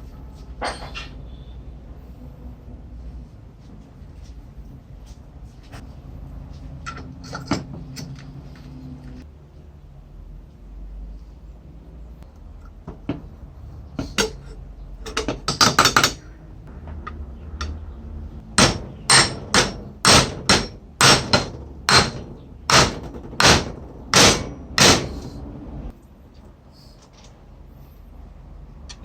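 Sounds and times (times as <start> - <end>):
hammer striking metal: 18.5 - 25.4.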